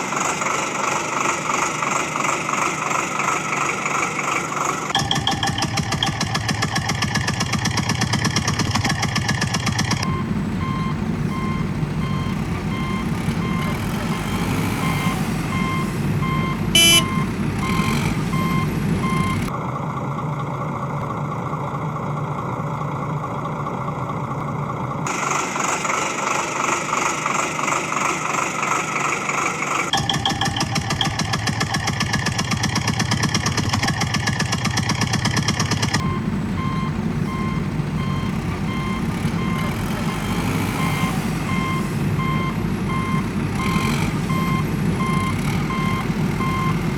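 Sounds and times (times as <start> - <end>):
diesel engine running: 0.0 - 46.9
reversing alarm beeping: 10.0 - 19.5, 36.0 - 46.9.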